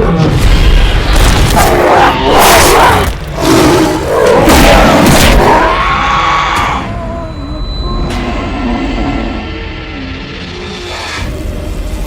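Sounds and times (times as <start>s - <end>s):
creature roars and cries: 1.5s - 7.7s.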